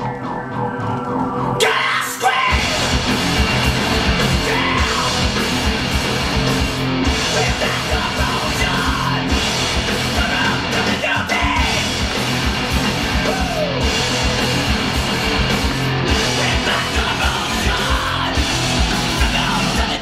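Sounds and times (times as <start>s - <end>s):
punk rock music with vocals: 0.0s - 20.0s.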